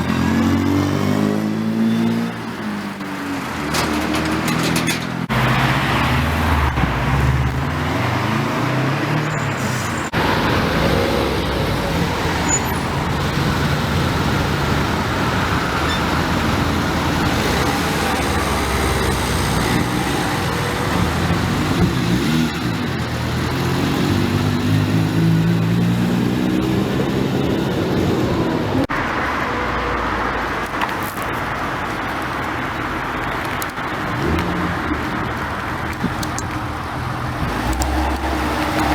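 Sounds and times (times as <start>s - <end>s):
cars driving past: 0.0s - 31.0s
steady traffic noise: 0.0s - 38.9s.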